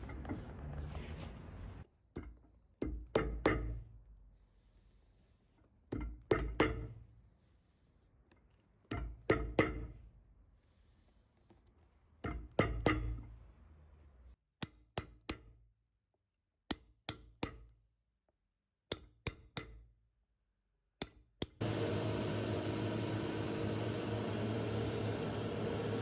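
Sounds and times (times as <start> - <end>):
steady machine noise: 21.6 - 26.0.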